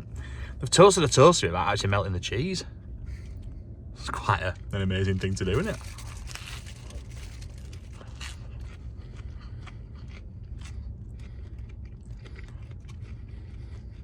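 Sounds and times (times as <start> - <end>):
steady low hum: 0.0 - 14.0
person chewing crunchy sandwich: 5.2 - 14.0.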